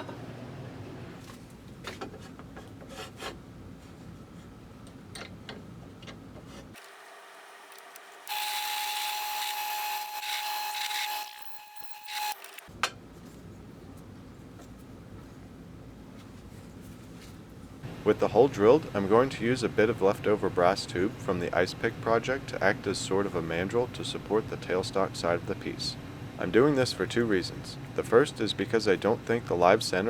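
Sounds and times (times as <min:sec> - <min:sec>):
drill boring into wood: 0:07.7 - 0:12.7.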